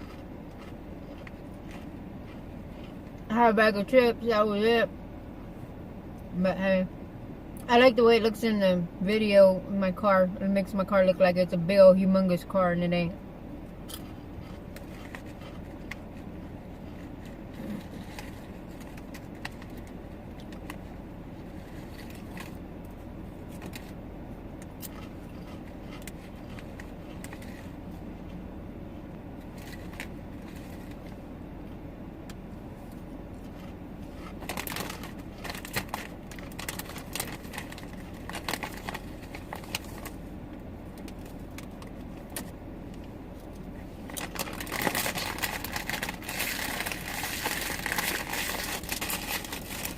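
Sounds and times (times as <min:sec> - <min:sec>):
chip bag crinkling: 0:00.0 - 0:02.9, 0:34.2 - 0:40.2, 0:44.1 - 0:49.9
chips being eaten: 0:00.0 - 0:03.0, 0:24.8 - 0:27.4, 0:44.1 - 0:49.9
car cabin hum: 0:00.0 - 0:49.9.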